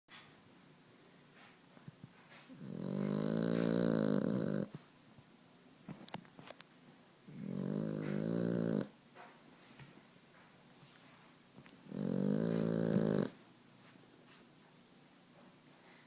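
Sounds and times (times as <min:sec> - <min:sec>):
puppy snoring: 0:02.4 - 0:04.9, 0:07.2 - 0:09.0, 0:11.6 - 0:13.4.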